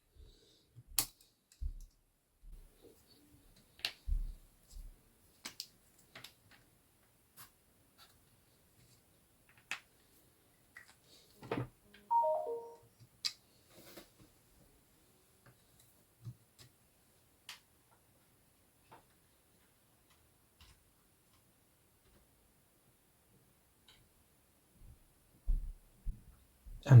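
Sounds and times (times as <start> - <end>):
clicks and taps of chips handled: 4.7 - 8.2, 8.8 - 9.9, 10.7 - 11.1
short electronic beeps: 12.1 - 12.8.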